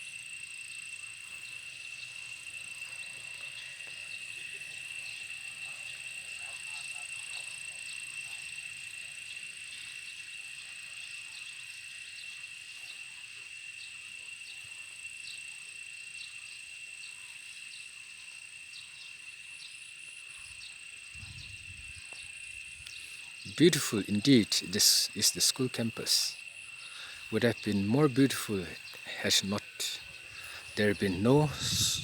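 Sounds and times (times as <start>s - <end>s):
crickets trilling: 0.0s - 32.0s.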